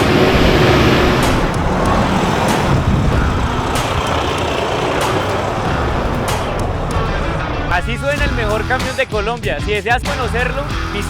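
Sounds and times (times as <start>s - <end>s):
diesel truck engine running: 0.0s - 11.0s.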